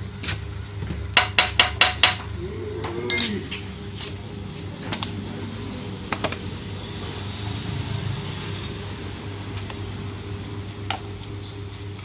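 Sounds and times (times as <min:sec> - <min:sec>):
steady low hum: 0:00.0 - 0:12.0
metal tools tapping metal: 0:01.2 - 0:02.3, 0:03.1 - 0:03.4
ringing metal clank: 0:03.1 - 0:03.4.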